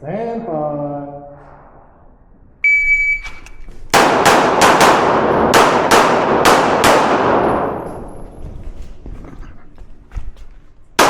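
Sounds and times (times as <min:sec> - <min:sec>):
shot timer beep: 0:02.6 - 0:03.6
handgun shots echoing: 0:03.9 - 0:08.0.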